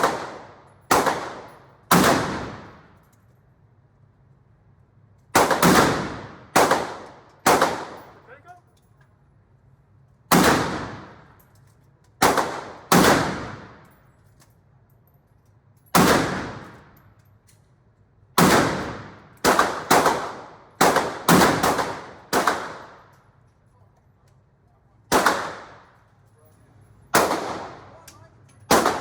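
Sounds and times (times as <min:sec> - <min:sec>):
gunshots with echoing decay: 0:00.0 - 0:02.9, 0:05.4 - 0:08.3, 0:10.3 - 0:11.4, 0:12.2 - 0:13.9, 0:16.0 - 0:17.0, 0:18.4 - 0:23.1, 0:25.1 - 0:26.1, 0:27.1 - 0:29.0.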